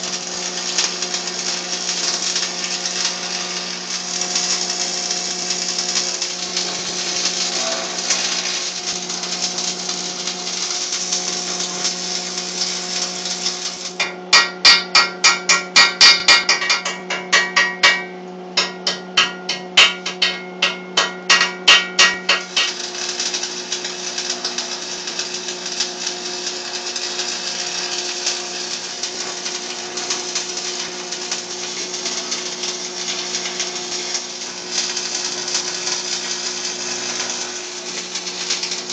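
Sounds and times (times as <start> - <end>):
machine hum and hiss: 0.0 - 38.9
hammer striking metal: 14.0 - 22.8.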